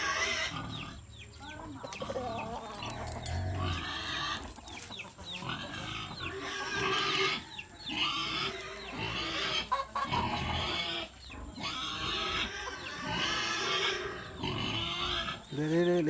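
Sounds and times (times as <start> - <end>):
piglets squealing: 0.0 - 1.0, 5.4 - 15.7.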